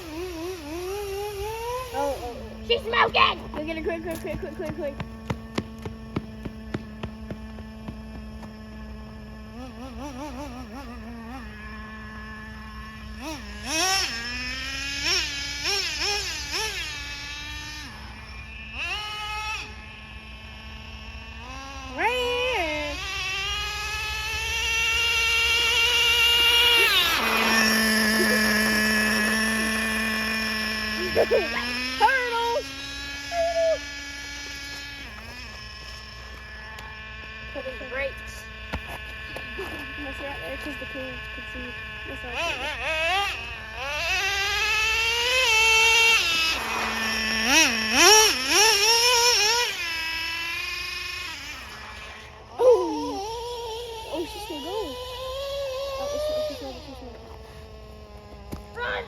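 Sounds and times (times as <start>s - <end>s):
small engine high whine: 0.0s - 59.0s.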